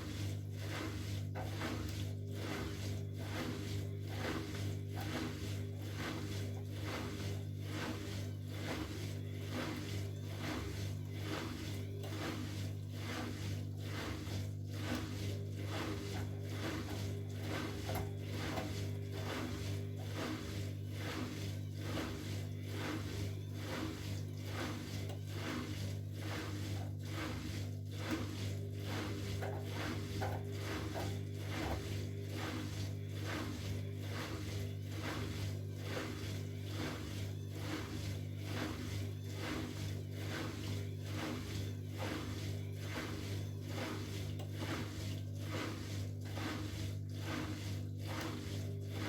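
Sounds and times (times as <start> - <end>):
washing machine motor hum: 0.0 - 49.0
laundry swishing in drum: 23.8 - 49.0.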